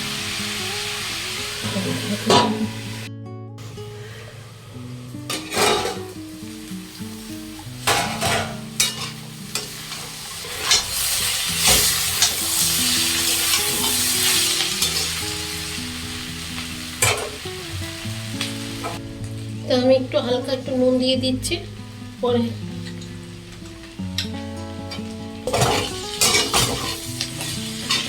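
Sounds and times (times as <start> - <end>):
vegetables sizzling in oil: 0.0 - 28.0
spatula scraping and knocking pan: 5.3 - 6.1, 7.8 - 11.0, 25.5 - 28.0.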